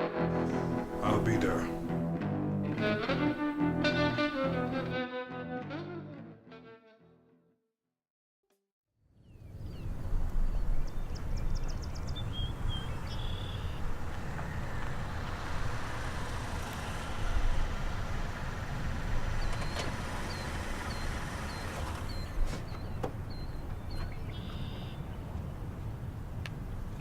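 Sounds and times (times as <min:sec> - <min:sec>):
low traffic rumble: 0:00.1 - 0:03.4, 0:09.5 - 0:27.0.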